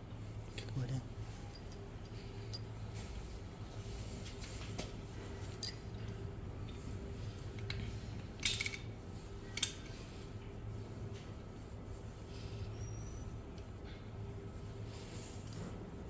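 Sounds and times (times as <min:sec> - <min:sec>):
steady low hum: 0:00.0 - 0:16.0
metal tools clinking: 0:05.6 - 0:05.9, 0:07.6 - 0:09.9.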